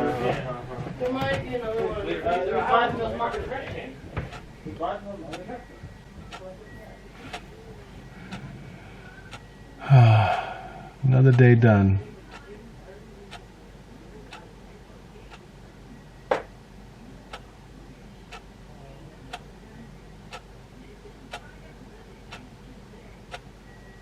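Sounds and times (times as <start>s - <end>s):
clock ticking: 4.2s - 6.5s, 8.3s - 8.5s, 9.2s - 9.6s, 18.3s - 18.5s, 20.3s - 20.6s, 21.3s - 21.5s, 23.2s - 23.6s.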